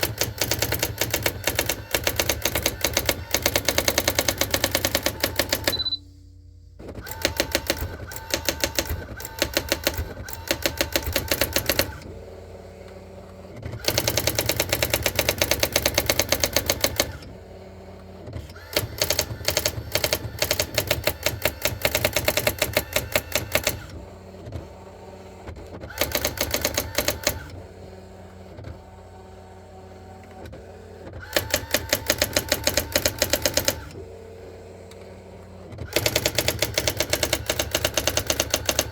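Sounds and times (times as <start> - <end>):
typewriter printing strikes: 0.0 - 6.0, 6.8 - 12.1, 13.6 - 17.3, 18.5 - 23.9, 25.9 - 27.6, 31.2 - 34.0, 35.8 - 38.9
mechanical hum: 0.0 - 38.9.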